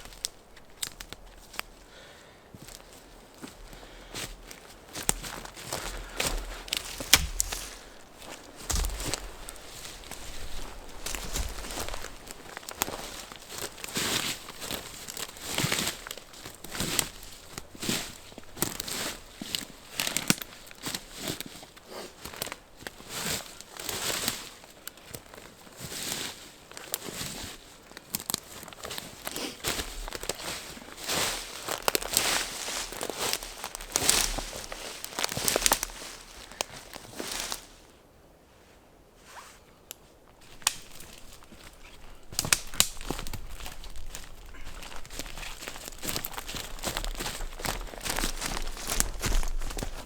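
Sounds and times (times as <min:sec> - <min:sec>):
dry material rustling and crackling: 0:00.0 - 0:01.9, 0:02.6 - 0:37.9, 0:40.0 - 0:50.0
sharp clicks of gear handled: 0:06.2 - 0:12.9.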